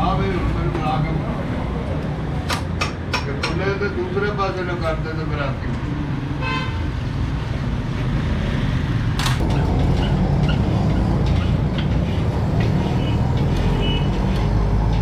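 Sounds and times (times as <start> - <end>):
vehicle engine rumbling: 7.0 - 15.0.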